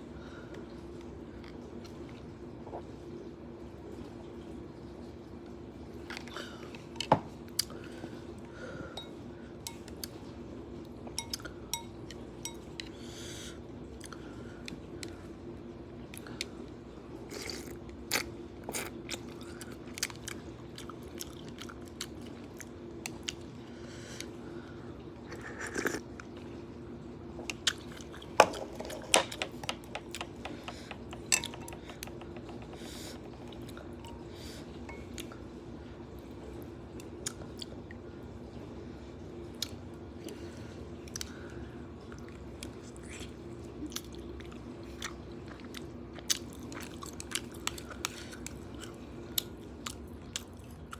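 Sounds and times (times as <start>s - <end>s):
steady low hum: 0.0s - 50.9s
person chewing noodles and vegetables: 17.3s - 23.5s, 42.0s - 50.9s.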